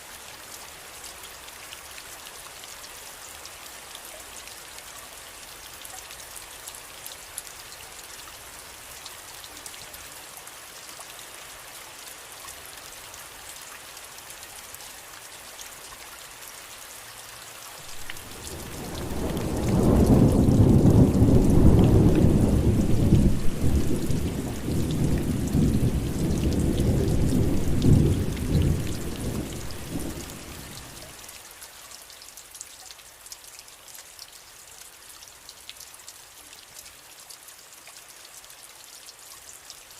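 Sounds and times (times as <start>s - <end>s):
steady rain: 0.0s - 39.9s
rumble of thunder: 17.9s - 30.9s.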